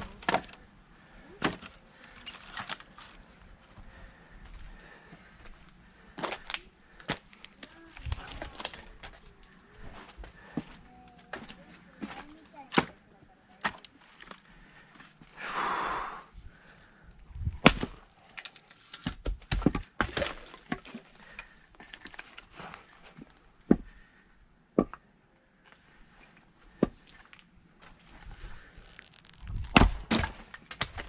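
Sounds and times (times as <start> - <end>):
axe splitting firewood: 0.0 - 0.6, 1.4 - 2.9, 11.3 - 13.0, 13.6 - 14.3, 17.4 - 22.5, 26.7 - 27.4, 28.6 - 31.0
breathy noise: 14.3 - 17.2.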